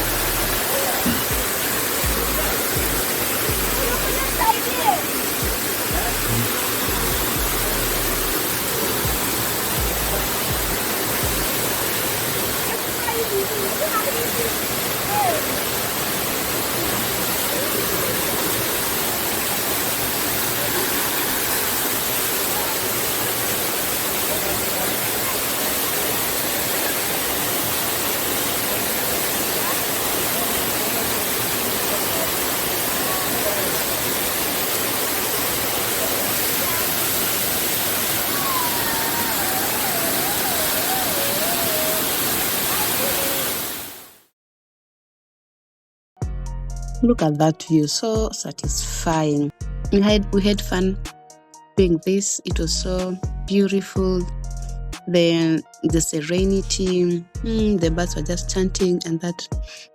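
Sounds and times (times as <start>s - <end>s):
waterfall rushing: 0.0s - 44.2s.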